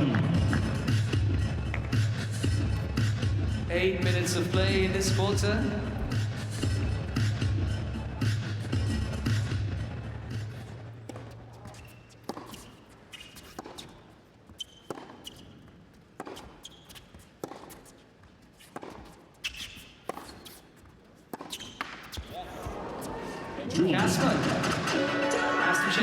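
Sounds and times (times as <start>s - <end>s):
background music: 0.0s - 10.9s, 23.4s - 26.0s
sneaker squeaks: 0.0s - 23.6s
tennis ball struck and bouncing: 4.4s - 7.5s, 10.5s - 18.0s, 18.6s - 23.0s.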